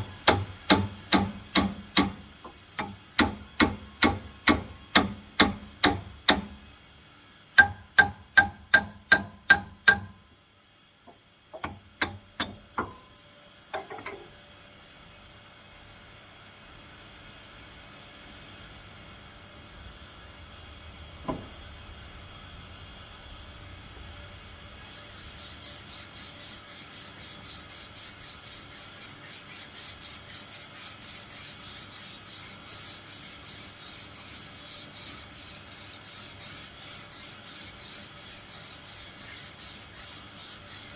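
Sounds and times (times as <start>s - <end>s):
file rasping on metal: 24.9s - 40.9s.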